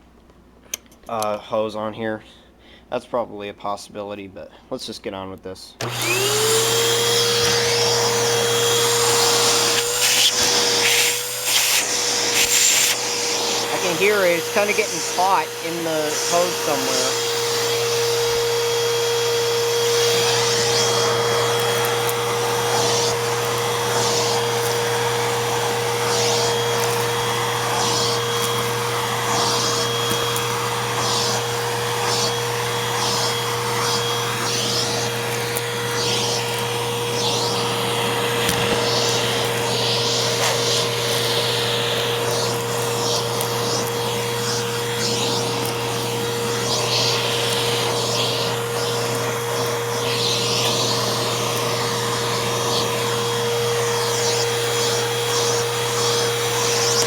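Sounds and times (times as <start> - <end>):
vacuum cleaner running: 5.8 - 57.0.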